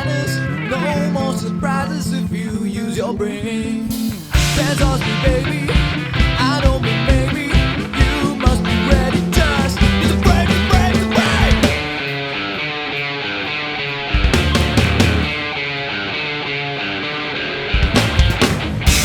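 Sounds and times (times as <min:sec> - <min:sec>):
guitar chords: 0:00.0 - 0:19.0
drums beating: 0:03.9 - 0:12.4, 0:14.1 - 0:15.6, 0:17.7 - 0:19.0.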